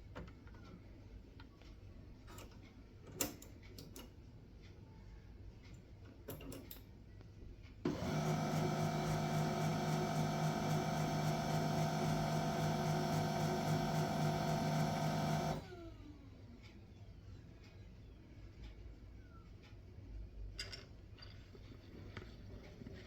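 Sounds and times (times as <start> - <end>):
printer clicks: 7.9 - 15.7
printer motor humming: 7.9 - 15.9.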